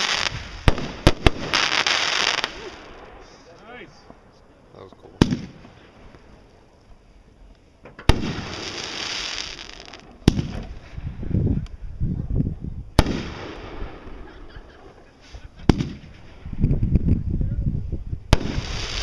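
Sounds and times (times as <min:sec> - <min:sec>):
fireworks hissing crackle: 0:00.0 - 0:04.1, 0:04.8 - 0:11.8, 0:18.3 - 0:19.0
fireworks bangs: 0:00.0 - 0:06.4, 0:07.8 - 0:11.4, 0:12.1 - 0:16.7, 0:18.3 - 0:19.0.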